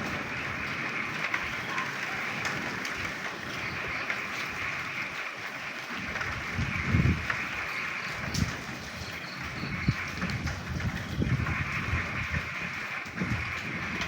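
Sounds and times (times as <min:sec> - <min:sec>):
frogs croaking: 0:00.0 - 0:10.5
rain patter: 0:00.0 - 0:14.0.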